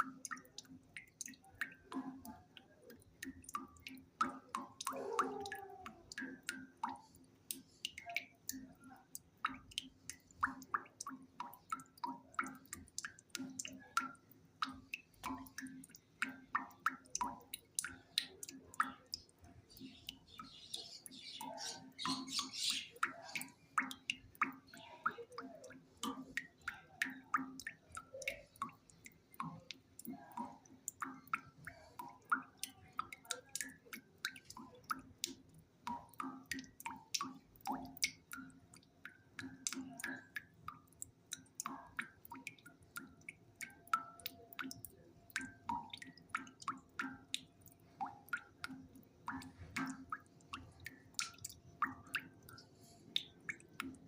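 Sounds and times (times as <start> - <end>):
irregular clicks and pops: 22.7 - 54.0.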